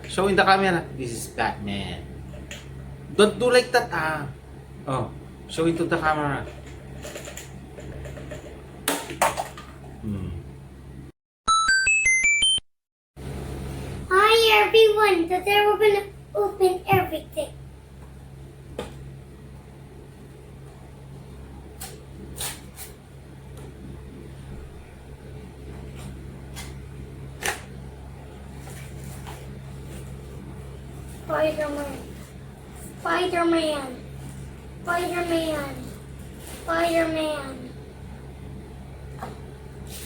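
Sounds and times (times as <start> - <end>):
steady low hum: 0.0 - 11.1, 13.2 - 40.0
electronic chime jingle: 11.5 - 12.7.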